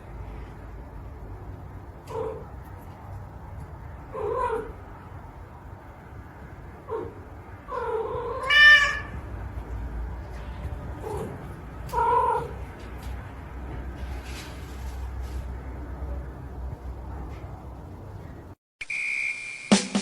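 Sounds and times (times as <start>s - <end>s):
cat meowing: 6.9s - 9.2s.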